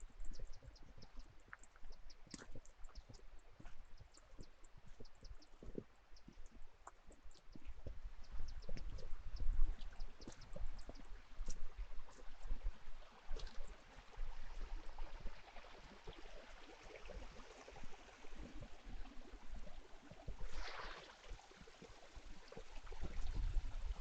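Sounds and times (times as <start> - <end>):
wind rumbling on microphone: 7.3 - 24.0.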